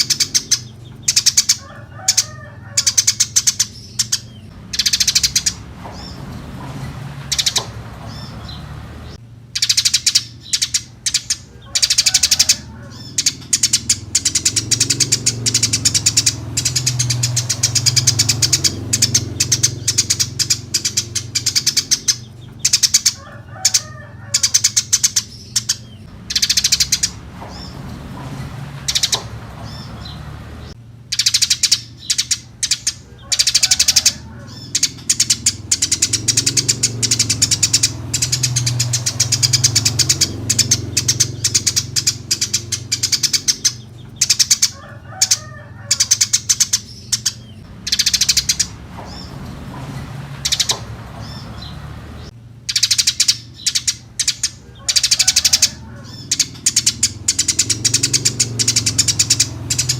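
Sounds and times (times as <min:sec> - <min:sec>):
steady low hum: 0:00.0 - 0:44.6
sparrows chirping: 0:00.0 - 0:59.9.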